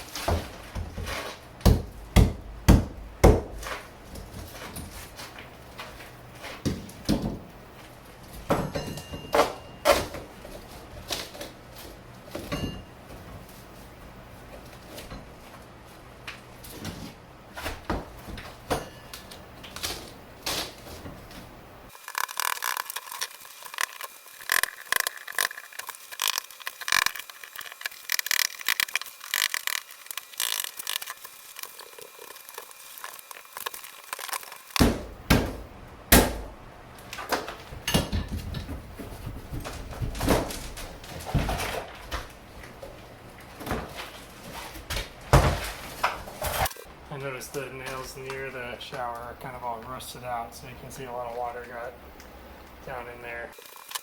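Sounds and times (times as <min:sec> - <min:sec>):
hammer knocking on board: 0:01.7 - 0:03.6
board pieces scraping: 0:21.9 - 0:34.8.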